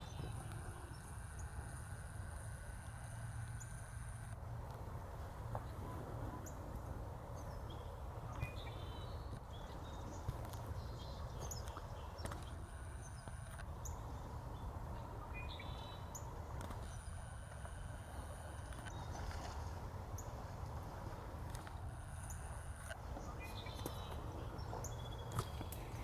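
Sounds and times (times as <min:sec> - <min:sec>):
small birds chirping: 0:07.3 - 0:26.0
horse hooves clopping on rocky ground: 0:23.1 - 0:26.0.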